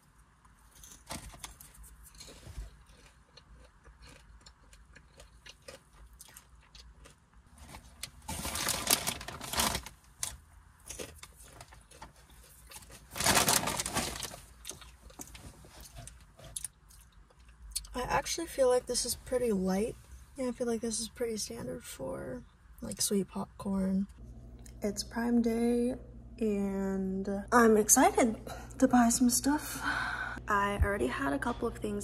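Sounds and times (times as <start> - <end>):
popcorn crackles: 0.5 - 18.0
bag crinkling and crunching: 7.5 - 16.6.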